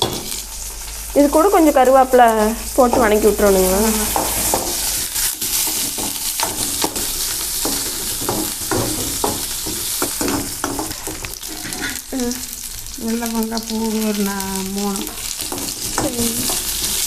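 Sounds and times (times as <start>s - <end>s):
food sizzling in a pan: 0.0s - 17.0s
utensil scraping a pan: 3.8s - 12.1s.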